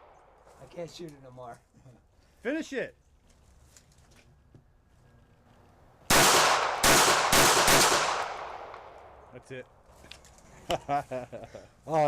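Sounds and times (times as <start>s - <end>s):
pistol shots echoing: 6.1s - 9.2s.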